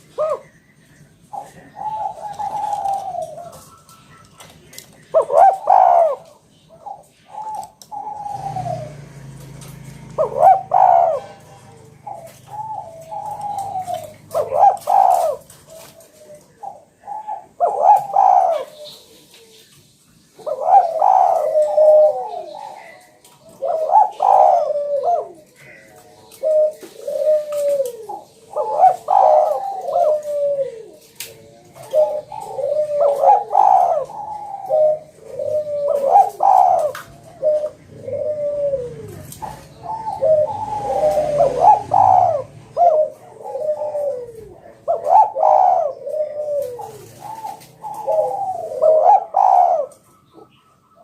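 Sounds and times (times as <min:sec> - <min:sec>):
dove cooing: 0:00.0 - 0:51.0.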